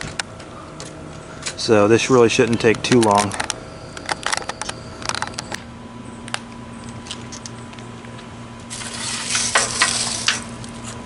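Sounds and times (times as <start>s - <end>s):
low electrical hum: 0.0s - 11.0s.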